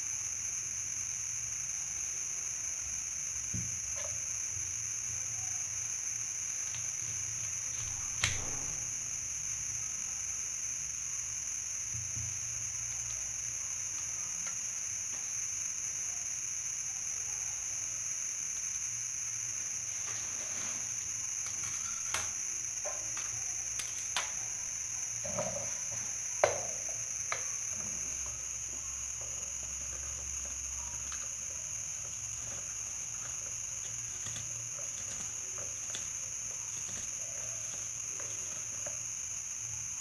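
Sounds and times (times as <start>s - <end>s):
faint low hum: 19.6s - 40.0s.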